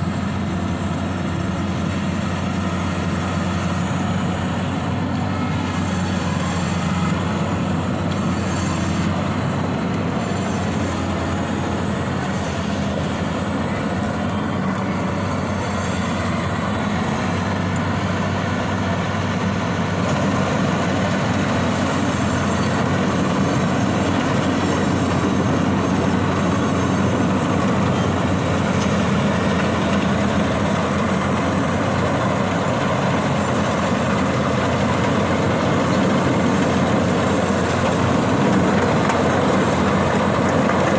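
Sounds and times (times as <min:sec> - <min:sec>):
combine harvester droning: 0:00.0 - 0:40.9.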